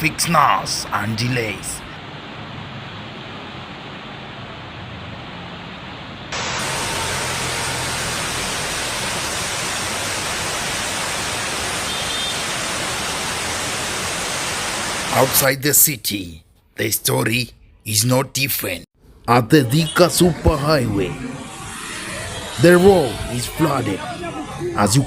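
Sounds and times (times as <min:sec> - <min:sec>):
heavy rain hissing: 0:06.3 - 0:15.5, 0:20.3 - 0:25.0.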